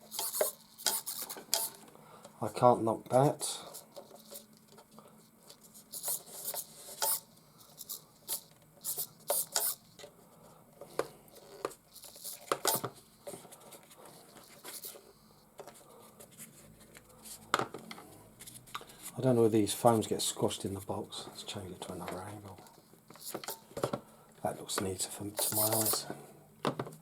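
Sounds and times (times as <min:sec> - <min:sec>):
objects handled clicking and tapping: 0:10.8 - 0:15.0, 0:22.0 - 0:24.0, 0:24.7 - 0:27.0.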